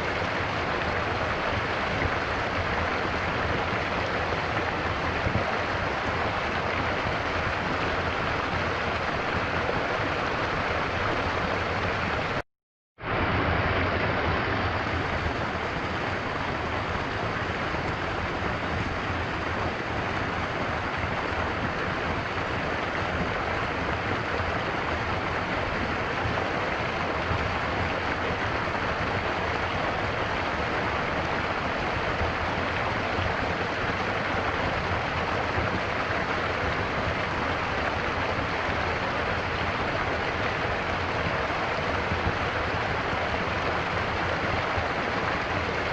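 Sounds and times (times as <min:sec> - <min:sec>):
stream water flowing: 0:00.0 - 0:12.4, 0:13.0 - 0:45.9.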